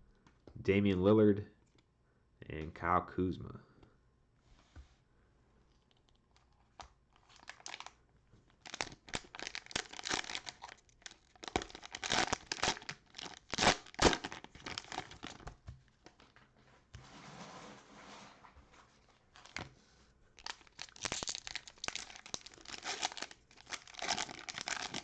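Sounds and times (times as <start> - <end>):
cellophane wrapper crinkling and tearing: 6.4 - 16.3, 19.3 - 19.7, 20.4 - 25.0.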